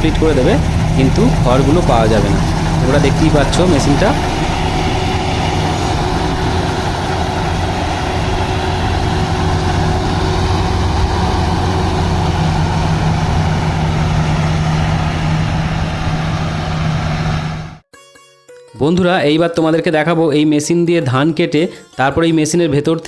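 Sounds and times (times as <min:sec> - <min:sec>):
combine harvester engine drone: 0:00.0 - 0:17.8.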